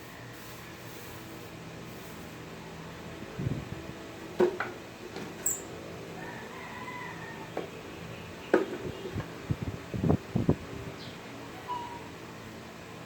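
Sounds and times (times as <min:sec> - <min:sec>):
faint drawn-out bird call: 0:11.6 - 0:12.1.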